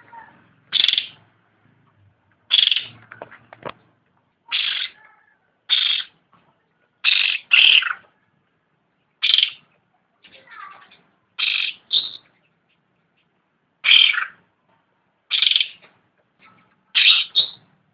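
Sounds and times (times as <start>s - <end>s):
songbird harsh calls: 0.0s - 1.3s, 2.5s - 3.0s, 4.4s - 6.2s, 7.0s - 8.2s, 9.2s - 9.7s, 10.3s - 12.6s, 13.8s - 14.5s, 15.3s - 15.9s, 16.5s - 17.7s.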